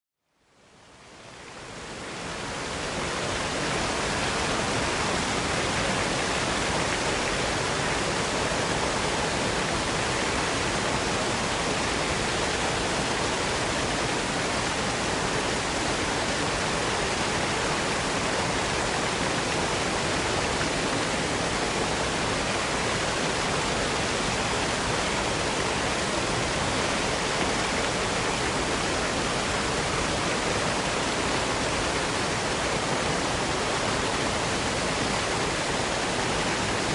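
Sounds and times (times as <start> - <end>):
waterfall rushing: 0.7 - 36.9.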